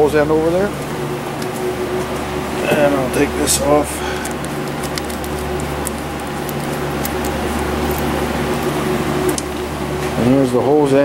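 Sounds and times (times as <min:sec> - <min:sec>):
machine hum: 0:00.0 - 0:11.0
tape peeling clicks and crackles: 0:04.2 - 0:08.7.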